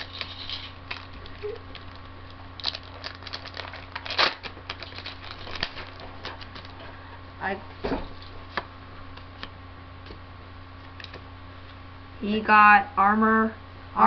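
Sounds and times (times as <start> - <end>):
card pack crinkling and rustling: 0.0 - 6.8.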